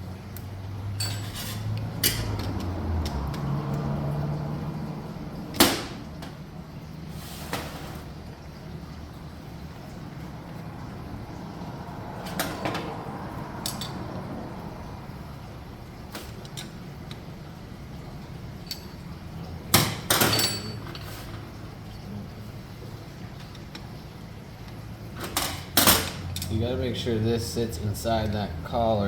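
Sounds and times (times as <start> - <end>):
metal engine parts clicking: 0.3 - 3.9, 13.6 - 14.1, 16.3 - 17.3, 18.5 - 19.2, 24.6 - 26.6.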